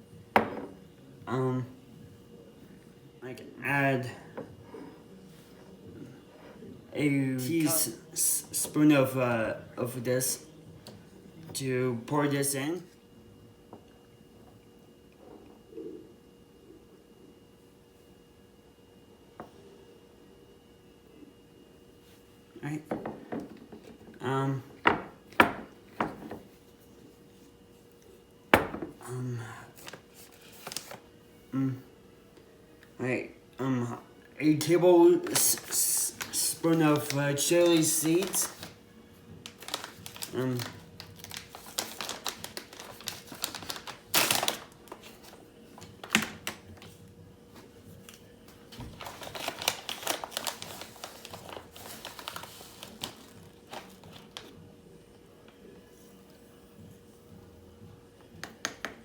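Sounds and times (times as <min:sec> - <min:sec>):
object set down knock: 0:00.4 - 0:00.8, 0:28.6 - 0:29.0.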